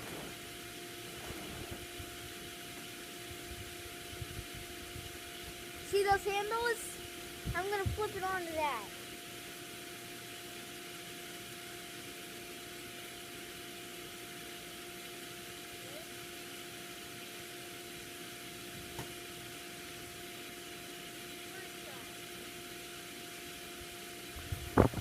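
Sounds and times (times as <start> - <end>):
low hum: 0.0 - 8.2.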